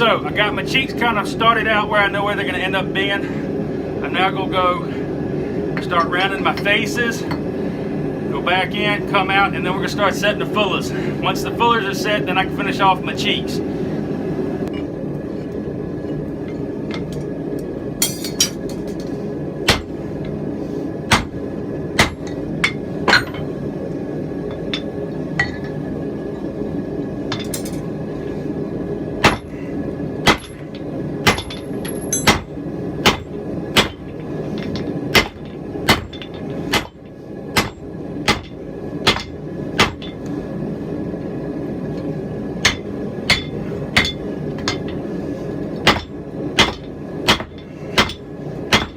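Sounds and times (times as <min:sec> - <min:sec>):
hammer striking hot steel: 0:18.0 - 0:19.1, 0:19.7 - 0:19.9, 0:21.1 - 0:21.4, 0:22.0 - 0:23.5, 0:29.2 - 0:29.5, 0:30.2 - 0:40.2, 0:42.6 - 0:45.0, 0:45.8 - 0:48.9.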